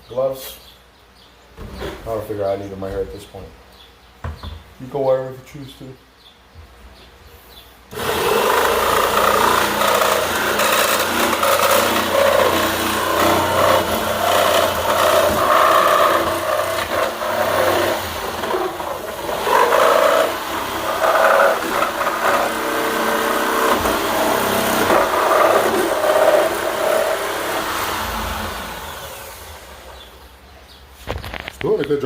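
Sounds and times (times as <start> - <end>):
jigsaw cutting plastic: 7.9 - 30.0.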